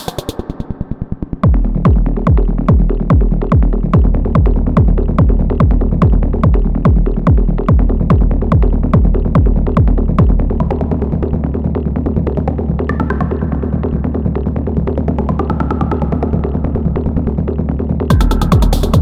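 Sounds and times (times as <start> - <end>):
ticking hi-hats: 0.0 - 0.7, 18.1 - 19.0
buzzy techno pattern: 0.0 - 10.4, 18.1 - 19.0
kick drum: 1.4 - 10.8, 18.1 - 19.0
rolling bass: 1.4 - 19.0.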